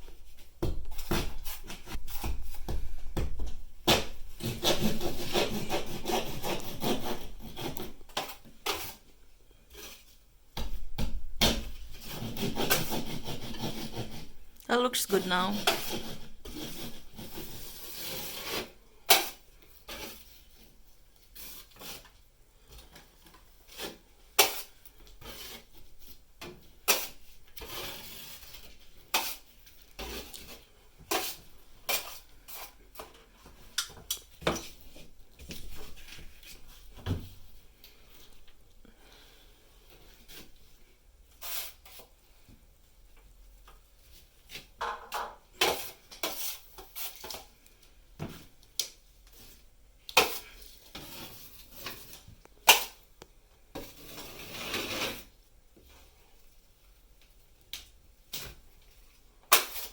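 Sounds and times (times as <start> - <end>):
hand tools scraping wall: 0.1 - 3.2, 3.8 - 9.1, 11.4 - 14.5, 15.6 - 20.7, 22.8 - 33.6, 45.5 - 47.5, 50.2 - 52.9, 53.7 - 55.4.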